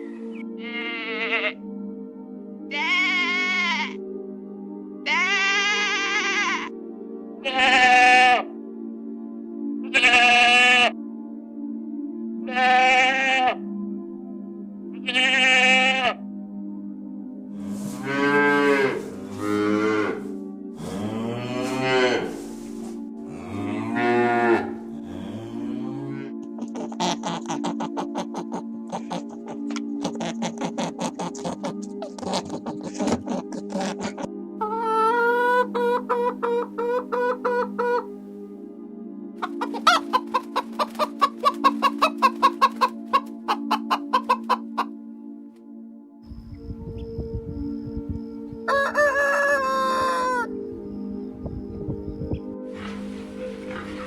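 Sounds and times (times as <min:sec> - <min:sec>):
background music: 0:00.0 - 0:54.0
cow mooing: 0:00.7 - 0:01.6, 0:17.6 - 0:22.5, 0:23.2 - 0:26.4, 0:52.8 - 0:54.0
chicken clucking: 0:26.6 - 0:38.1, 0:39.4 - 0:44.9, 0:46.4 - 0:50.5, 0:52.0 - 0:54.0.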